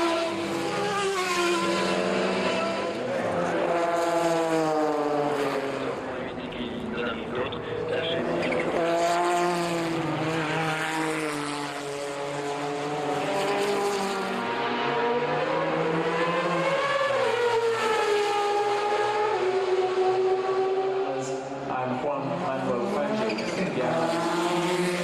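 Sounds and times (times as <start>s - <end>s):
racing car engine at high revs: 0.0s - 25.0s.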